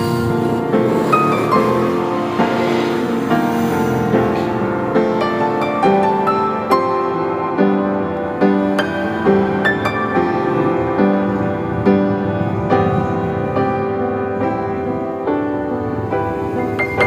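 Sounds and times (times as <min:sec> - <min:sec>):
gentle piano instrumental: 0:00.0 - 0:17.0.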